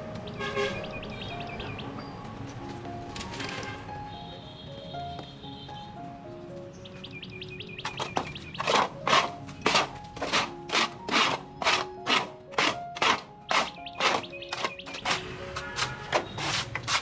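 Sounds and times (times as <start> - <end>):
soft background music: 0.0 - 17.0
rhythmic scraping strokes: 7.9 - 17.0.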